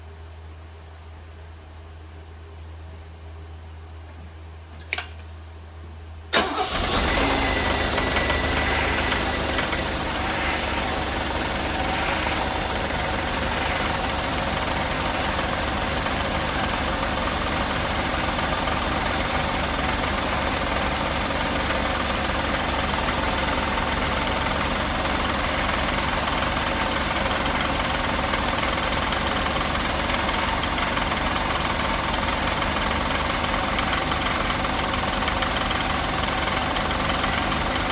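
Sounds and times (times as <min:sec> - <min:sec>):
car engine starting and idling: 0:06.3 - 0:37.9
engine knocking: 0:07.3 - 0:37.9
thin high whine: 0:08.4 - 0:14.4.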